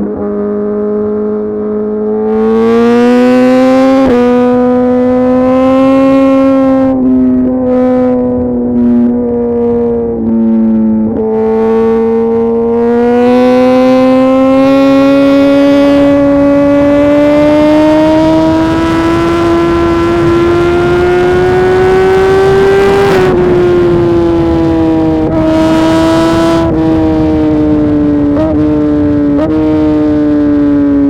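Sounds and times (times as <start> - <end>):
motorcycle engine pulling hard: 9.7 - 31.0.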